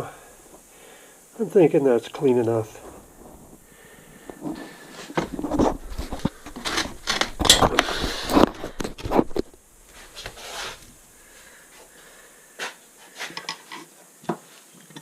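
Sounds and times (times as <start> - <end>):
metal tools clattering and scraping: 4.4 - 9.4.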